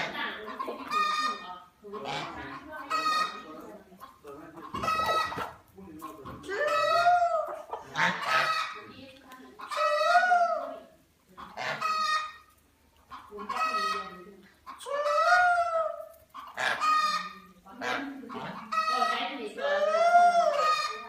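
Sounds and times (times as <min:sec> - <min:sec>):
chickens calling and crowing: 0:00.0 - 0:21.0.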